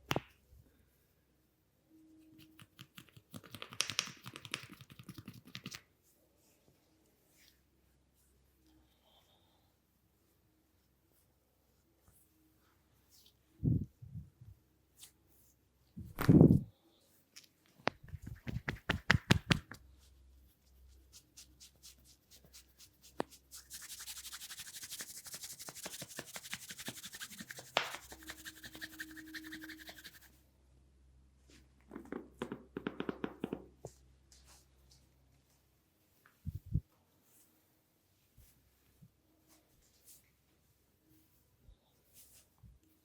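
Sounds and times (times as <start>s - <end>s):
scratching and rubbing hair: 2.3s - 6.6s, 18.0s - 30.4s
rhythmic taps on head: 2.6s - 5.8s, 18.0s - 19.8s, 32.1s - 33.7s.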